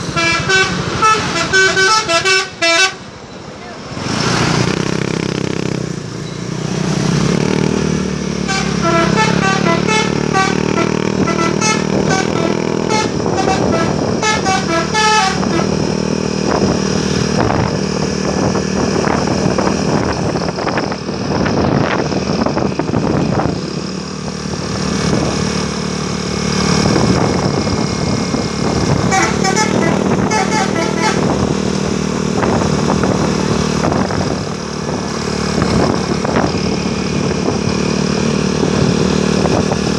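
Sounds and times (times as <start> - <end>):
bus multi-tone horn melody: 0.0 - 3.3, 7.4 - 16.7, 28.7 - 34.3
bus engine running: 0.0 - 39.9.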